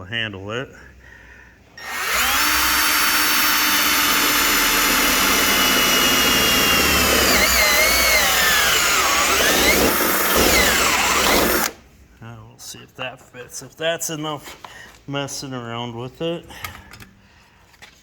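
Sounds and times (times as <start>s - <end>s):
electric drill whining: 1.8s - 11.8s.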